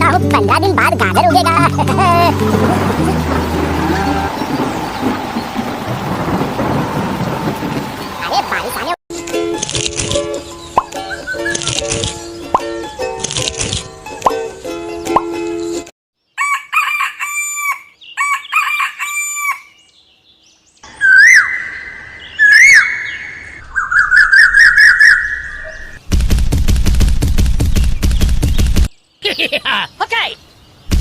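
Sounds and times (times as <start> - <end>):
rooster calls: 16.4 - 19.8
fast crackling rattle: 26.1 - 28.9.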